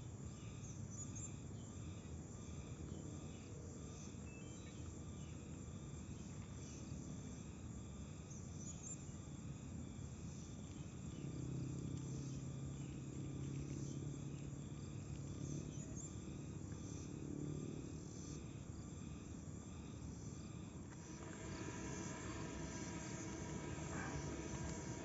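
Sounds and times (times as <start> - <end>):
insects chirring: 0.0 - 25.0
another vehicle engine: 20.9 - 25.0
vehicle engine hum: 20.9 - 25.0.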